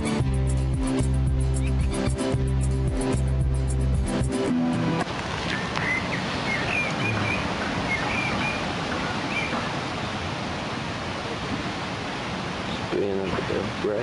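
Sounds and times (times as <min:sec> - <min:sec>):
music: 0:00.0 - 0:05.1
wind on microphone: 0:05.0 - 0:13.8.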